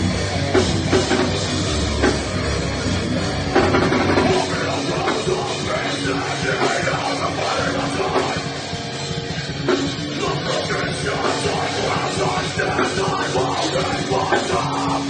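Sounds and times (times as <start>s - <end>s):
deep bass: 0.0s - 15.0s
drum kit: 0.0s - 15.0s
rock band playing live: 0.0s - 15.0s.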